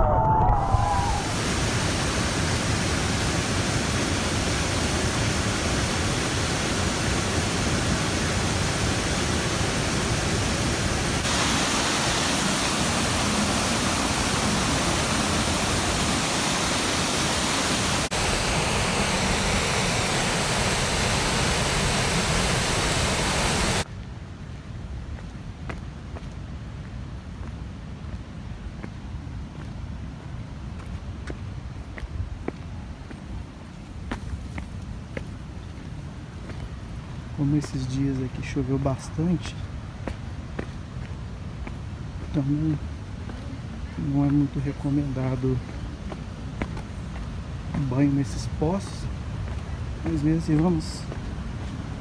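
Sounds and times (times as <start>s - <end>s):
waterfall rushing: 0.4s - 23.9s, 35.8s - 52.0s.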